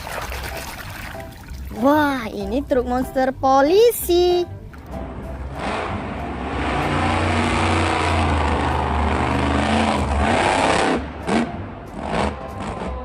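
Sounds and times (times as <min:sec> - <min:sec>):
engine revving: 0:04.9 - 0:13.0.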